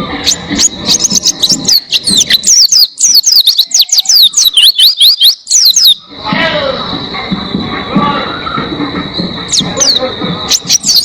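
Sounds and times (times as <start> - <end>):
small bird singing high notes: 0.2 - 6.0, 9.5 - 11.0.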